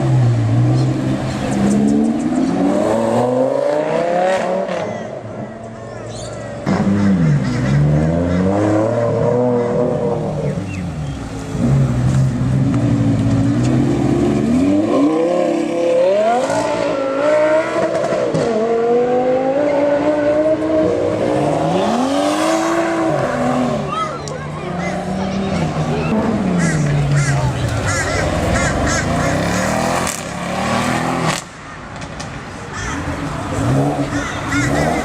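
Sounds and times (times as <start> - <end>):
sports car engine revving: 6.6 - 31.5.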